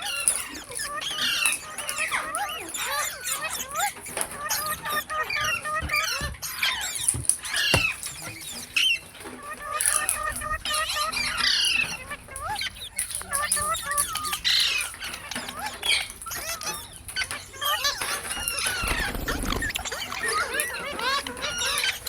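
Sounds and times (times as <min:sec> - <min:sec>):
parrots chattering and whistling: 0:00.0 - 0:22.0
sharp knocks: 0:07.1 - 0:08.4.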